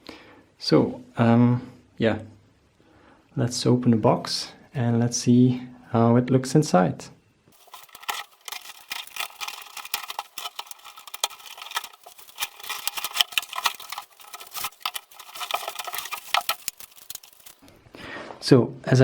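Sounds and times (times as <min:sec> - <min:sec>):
packing material rustling: 0:07.5 - 0:17.6
cardboard box being opened: 0:07.6 - 0:17.6.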